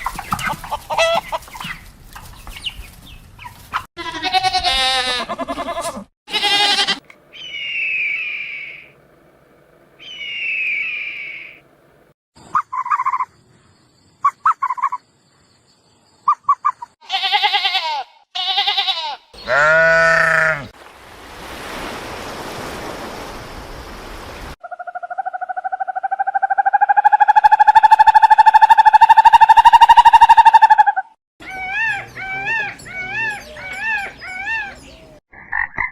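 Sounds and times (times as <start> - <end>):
bleating animal calls: 4.0 - 7.0, 17.0 - 20.7
long pulsing animal call: 17.1 - 20.7.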